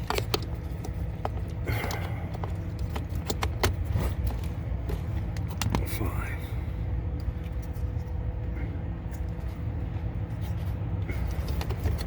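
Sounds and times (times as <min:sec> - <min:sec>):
small hard parts clicking: 0:00.0 - 0:04.4
steady low hum: 0:00.0 - 0:12.0.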